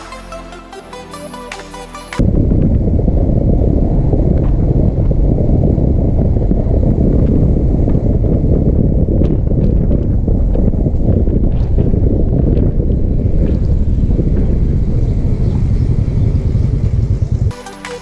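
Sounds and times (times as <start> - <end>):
wind buffeting microphone: 2.2 - 17.5
motorcycle engine: 2.2 - 18.0.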